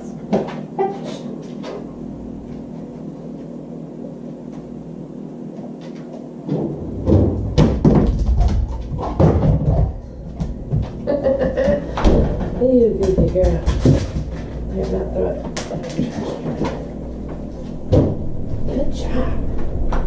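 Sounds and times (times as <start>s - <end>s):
low hum: 0.0s - 20.0s
refrigerator door knocks and thumps: 6.9s - 10.0s, 11.7s - 14.3s.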